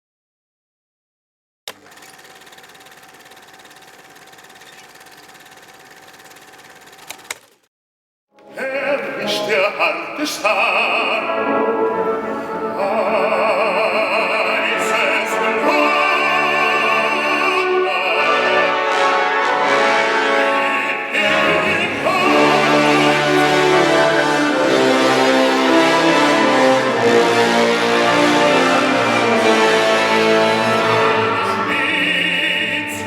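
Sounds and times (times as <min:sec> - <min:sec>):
operatic singing: 0:08.4 - 0:33.0
orchestra: 0:08.4 - 0:33.0.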